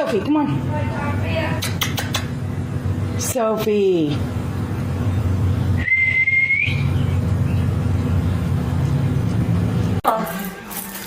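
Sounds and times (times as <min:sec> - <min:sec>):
person whistling for dog: 0:05.8 - 0:06.8.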